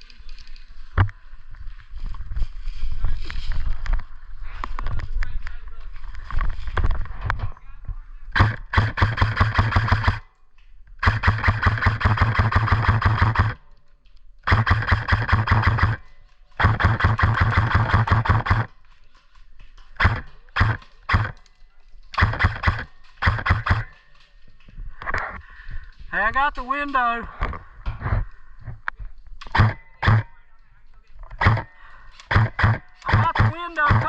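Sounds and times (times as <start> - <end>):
airsoft gun firing bursts: 8.4 - 10.2, 11.0 - 13.6, 14.5 - 16.0, 16.6 - 18.7, 20.0 - 21.4, 22.2 - 24.0, 29.4 - 30.4, 31.4 - 34.0.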